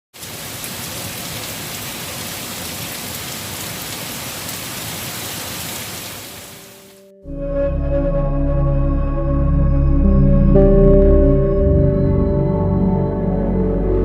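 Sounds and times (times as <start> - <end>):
steady rain falling: 0.2 - 7.1.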